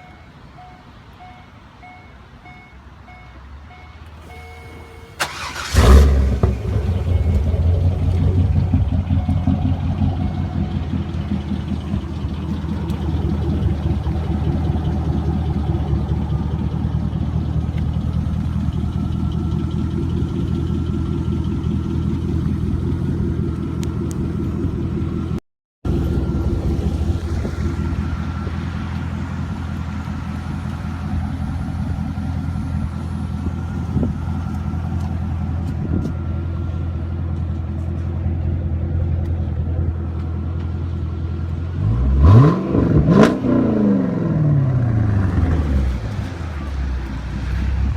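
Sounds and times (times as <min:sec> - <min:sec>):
loud car engine idle rumble: 0:04.2 - 0:42.2, 0:42.9 - 0:47.9
starter motor cranking: 0:05.1 - 0:06.8.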